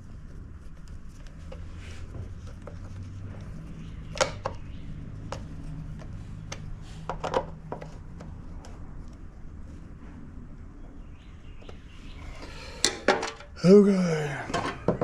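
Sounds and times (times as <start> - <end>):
metal tools clicking and knocking: 12.8 - 13.6.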